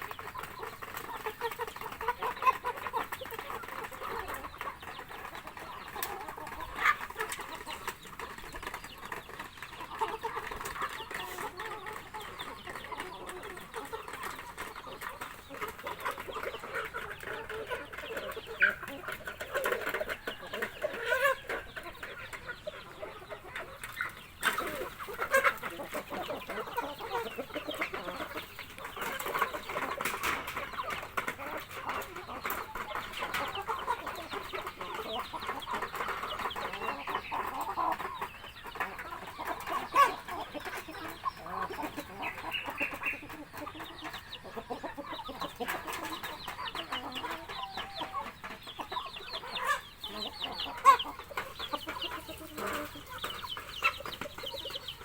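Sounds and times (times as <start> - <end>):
chickens clucking: 0.0 - 55.0.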